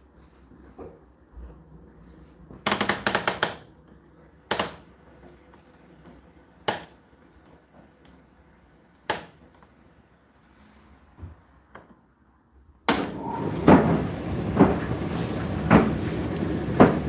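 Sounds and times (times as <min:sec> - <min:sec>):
knocks inside tumble dryer drum: 0:12.9 - 0:17.0.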